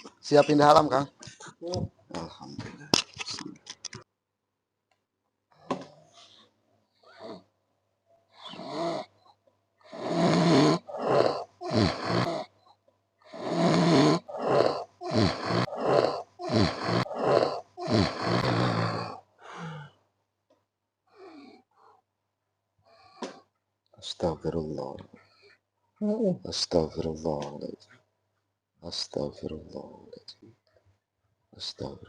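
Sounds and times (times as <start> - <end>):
man snoring: 8.4 - 9.1, 9.8 - 12.5, 13.3 - 19.9.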